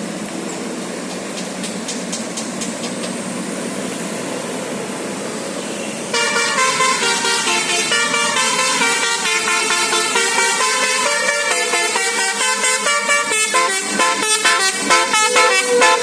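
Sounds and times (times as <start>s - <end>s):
musical air horn melody: 6.1s - 16.0s.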